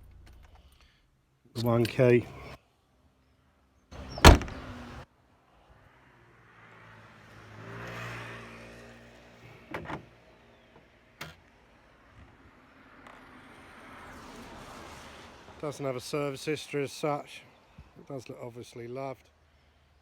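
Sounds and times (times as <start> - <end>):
motor vehicle passing: 4.0 - 5.0, 5.8 - 11.0, 12.4 - 15.6.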